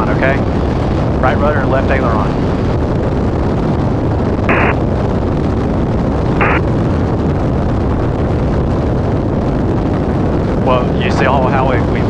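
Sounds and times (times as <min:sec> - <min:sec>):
propeller plane engine drone: 0:00.0 - 0:12.0
hissing bursts: 0:04.5 - 0:04.8, 0:06.4 - 0:06.6.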